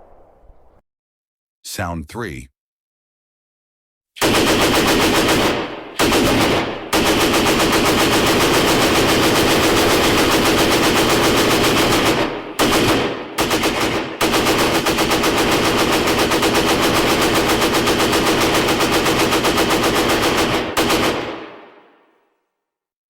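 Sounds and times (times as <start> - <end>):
automatic gunfire indoors: 4.2 - 22.0.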